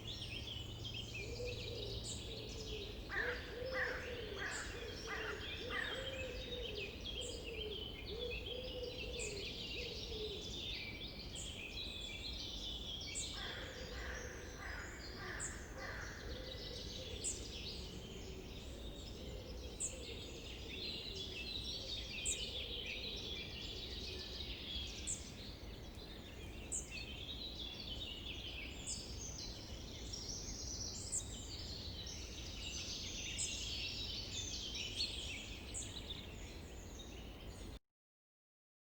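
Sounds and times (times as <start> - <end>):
birds singing: 0.0 - 37.8.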